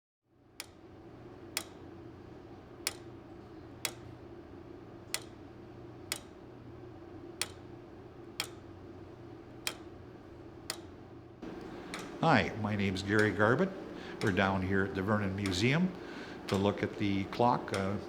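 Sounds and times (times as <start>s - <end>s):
clock ticking: 0.6s - 0.8s, 1.6s - 1.9s, 2.8s - 3.1s, 3.8s - 4.1s, 5.1s - 5.4s, 6.1s - 6.4s, 7.4s - 7.6s, 8.4s - 8.6s, 9.6s - 9.9s, 10.7s - 18.0s.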